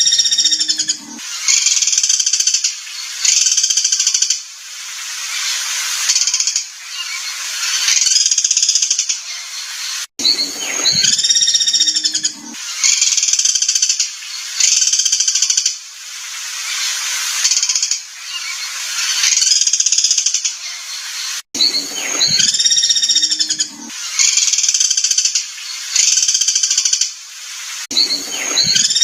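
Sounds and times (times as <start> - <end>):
harsh buzzy songbird calls: 0.0 - 4.5, 5.2 - 29.0
clearer lower bird call: 6.2 - 13.4, 27.9 - 29.0.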